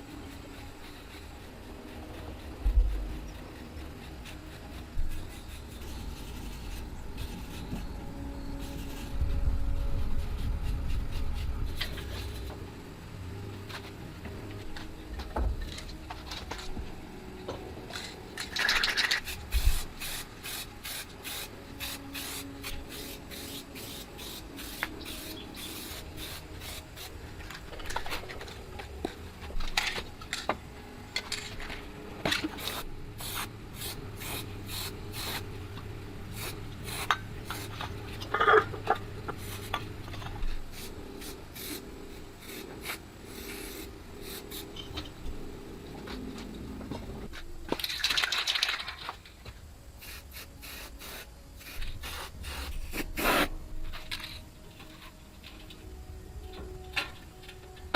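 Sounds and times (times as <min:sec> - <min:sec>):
hand tool scraping: 0:52.5 - 0:55.7.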